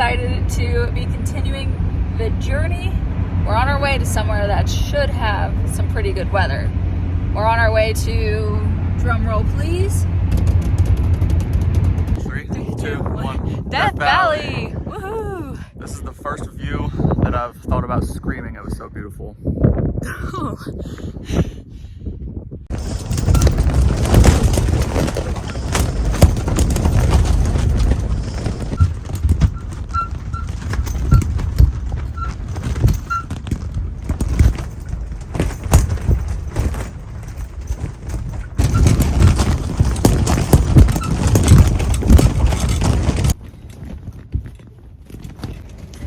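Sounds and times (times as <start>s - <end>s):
strong wind buffeting: 0.0s - 46.0s
knocks and rattles: 9.6s - 12.4s, 22.7s - 46.0s.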